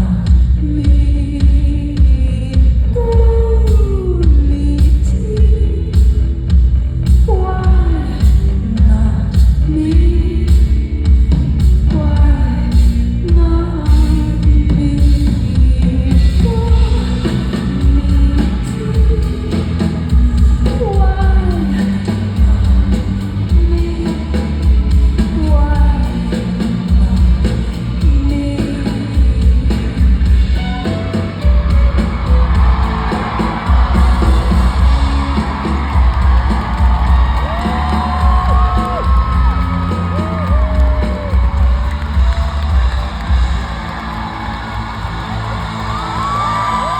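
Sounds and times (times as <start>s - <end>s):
live band music with vocals: 0.0s - 46.9s
pulsing bass beat: 0.0s - 46.9s
crowd cheering and whooping: 30.6s - 46.9s.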